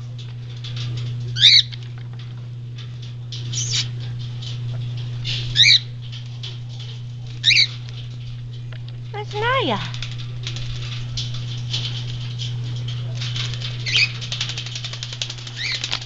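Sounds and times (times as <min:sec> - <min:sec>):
steady low hum: 0:00.0 - 0:16.0
small animal chirping: 0:03.5 - 0:03.9.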